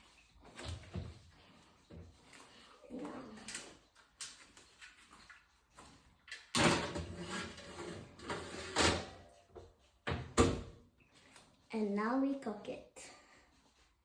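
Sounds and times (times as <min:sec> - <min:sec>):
baking tray scraping clatter: 0:06.6 - 0:09.3.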